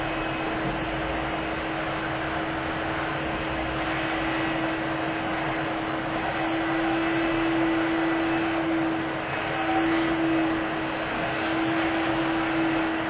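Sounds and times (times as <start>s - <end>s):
vacuum cleaner running: 0.0s - 13.0s.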